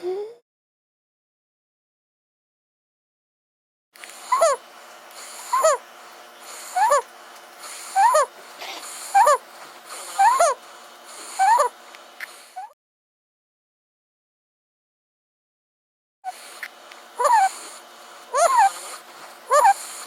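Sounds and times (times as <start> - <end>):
raspy breath: 7.6 - 12.7, 16.3 - 20.0.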